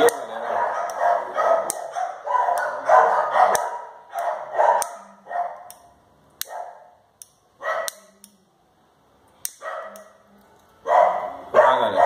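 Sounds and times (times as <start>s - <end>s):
dog barking: 0.0s - 5.7s, 6.4s - 7.0s, 7.6s - 8.1s, 9.6s - 10.2s, 10.8s - 12.0s.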